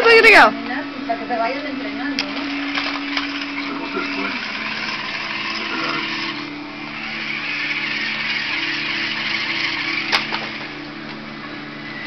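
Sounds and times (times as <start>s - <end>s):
toy car electric motor whirring: 2.2s - 11.0s.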